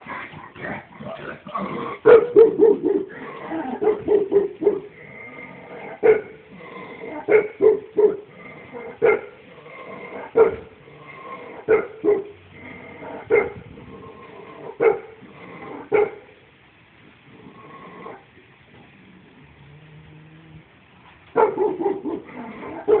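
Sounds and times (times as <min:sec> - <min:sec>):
dog barking: 0:02.0 - 0:03.1, 0:03.8 - 0:04.9, 0:06.0 - 0:06.4, 0:07.3 - 0:08.2, 0:09.0 - 0:09.4, 0:10.4 - 0:10.7, 0:11.7 - 0:12.4, 0:13.3 - 0:13.6, 0:14.8 - 0:15.1, 0:15.9 - 0:16.2, 0:21.3 - 0:23.0.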